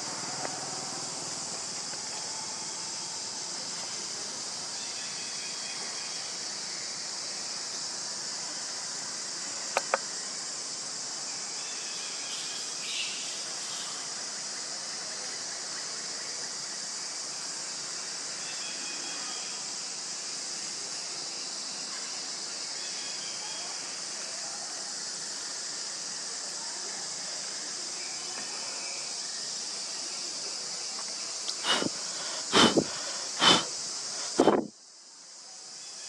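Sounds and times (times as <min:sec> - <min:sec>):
high-pitched insect drone: 0:00.0 - 0:36.0
faint chirps: 0:20.7 - 0:34.7.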